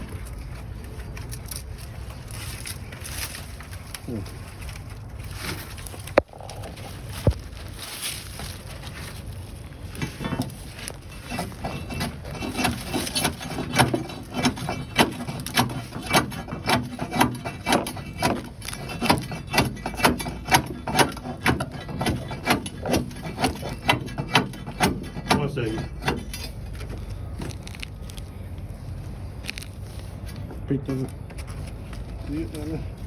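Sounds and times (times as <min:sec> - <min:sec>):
sharp cutting strokes on roots: 0:11.2 - 0:26.4.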